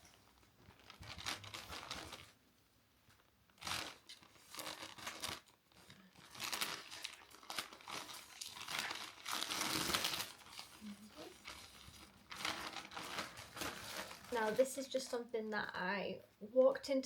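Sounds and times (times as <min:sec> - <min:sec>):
packaging rustling and crinkling: 0:00.0 - 0:15.2.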